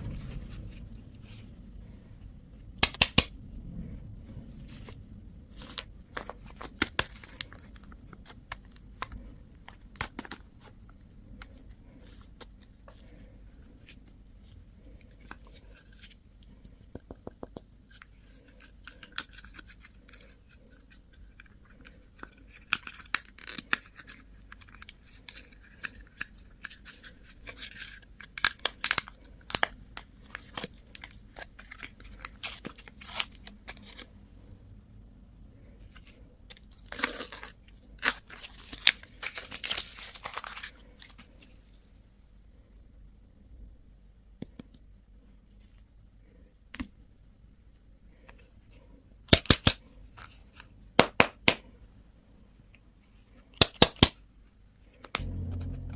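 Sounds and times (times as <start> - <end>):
candy wrapper crinkling and tearing: 5.6 - 10.8, 18.0 - 34.1, 36.0 - 41.5.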